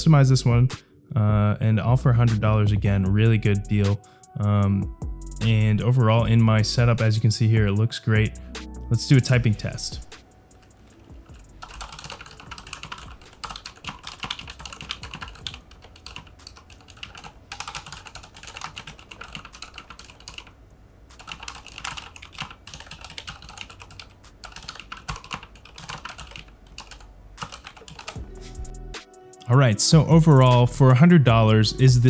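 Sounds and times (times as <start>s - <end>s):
mechanical keyboard typing clatter: 10.6s - 28.3s.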